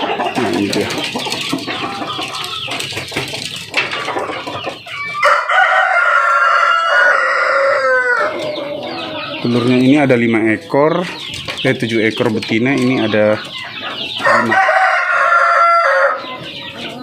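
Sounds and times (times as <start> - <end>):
chickens clucking: 0.0 - 17.0
rooster crowing: 5.2 - 9.4, 14.2 - 16.4.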